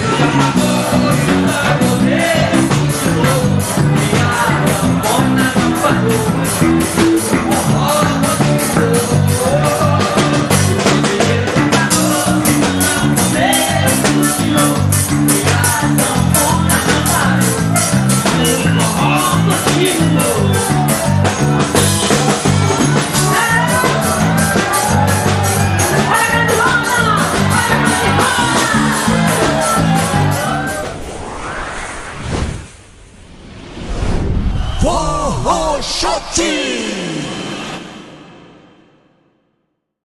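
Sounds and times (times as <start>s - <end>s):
band music with fast percussion: 0.0s - 30.8s
bass line: 0.0s - 31.7s.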